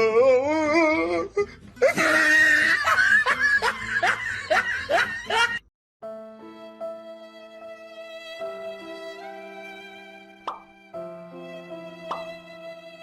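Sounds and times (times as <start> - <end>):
person laughing hard: 1.8 - 5.6.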